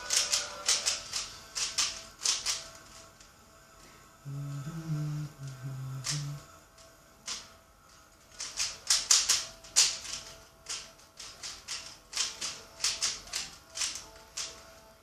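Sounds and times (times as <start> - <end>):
puzzle cube plastic clicks: 0.0 - 3.1, 8.3 - 14.6.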